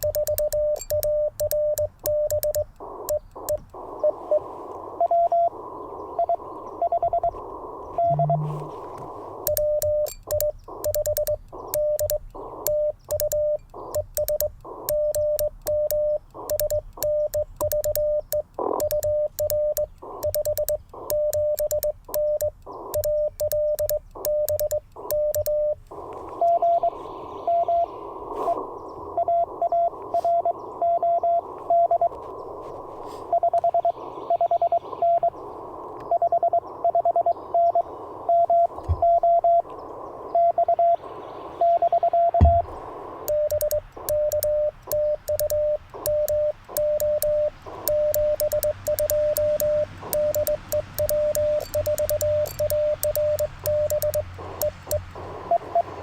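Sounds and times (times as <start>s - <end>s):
higher-pitched morse code reply: 0.0s - 3.6s, 8.0s - 25.8s, 42.4s - 55.7s
morse key clicking: 0.0s - 3.8s, 9.5s - 25.6s, 42.4s - 55.2s
morse code sidetone: 0.0s - 5.6s, 6.2s - 28.6s, 29.2s - 32.2s, 41.6s - 56.0s
receiver hiss: 0.0s - 56.0s.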